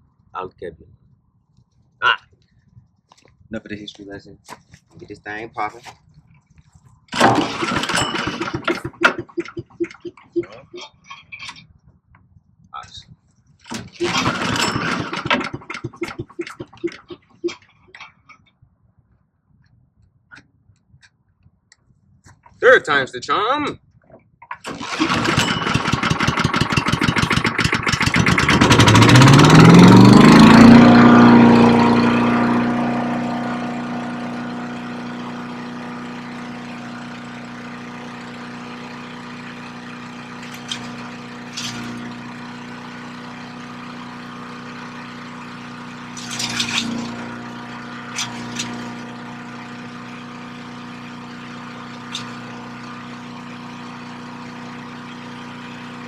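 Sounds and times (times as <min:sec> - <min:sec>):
small engine sputtering and running: 0:07.1 - 0:10.8, 0:13.7 - 0:17.6, 0:24.6 - 0:56.0.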